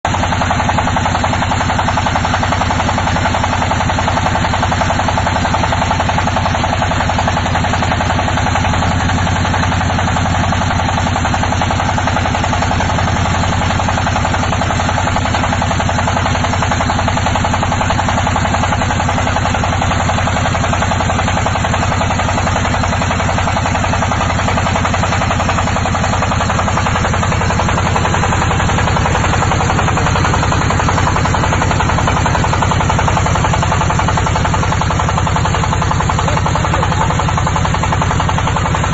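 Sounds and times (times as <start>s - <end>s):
drilling rig engine droning: 21.7s - 38.9s.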